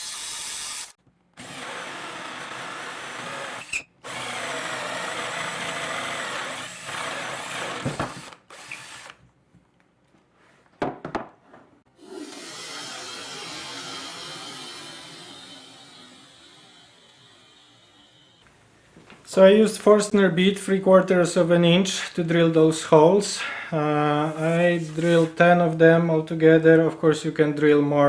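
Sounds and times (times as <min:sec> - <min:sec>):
power drill boring into wood: 0:00.0 - 0:09.2, 0:12.0 - 0:18.4.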